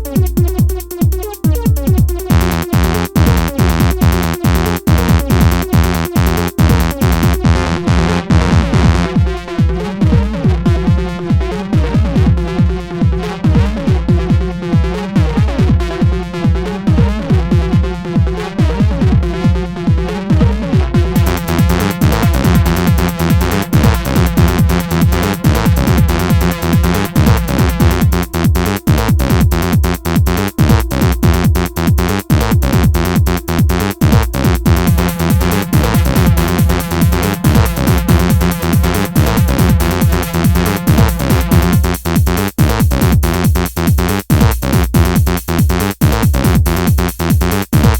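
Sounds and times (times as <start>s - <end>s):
electronic dance music: 0.0s - 47.9s.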